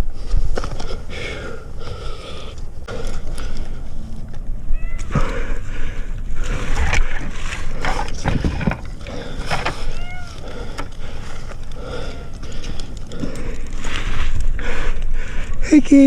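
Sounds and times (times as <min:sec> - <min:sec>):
cat meowing: 0:04.6 - 0:05.4, 0:09.8 - 0:10.4
rustling and knocks in tree: 0:06.4 - 0:11.7.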